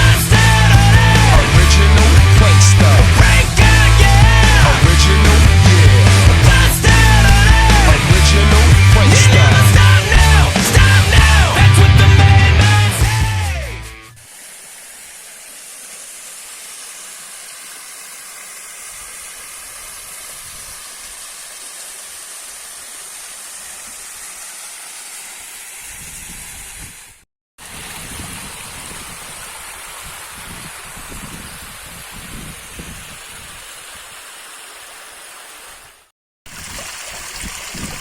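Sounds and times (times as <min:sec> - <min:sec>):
waterfall rushing: 0:14.2 - 0:26.8, 0:27.6 - 0:36.1.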